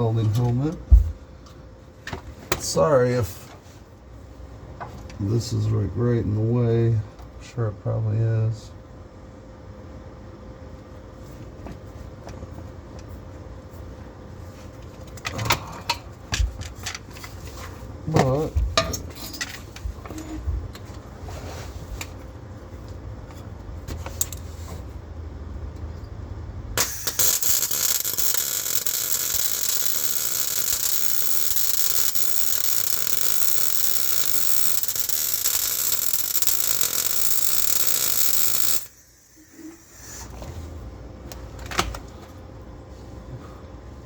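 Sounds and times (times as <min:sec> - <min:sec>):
welding arc hissing: 0:26.8 - 0:40.2.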